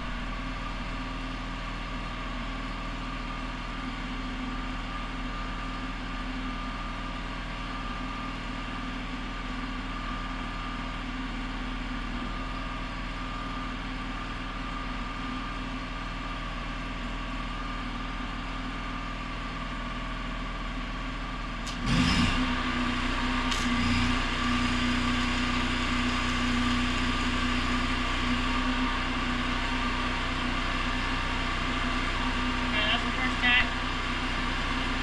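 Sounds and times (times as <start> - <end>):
arc welder humming: 21.6 - 29.8.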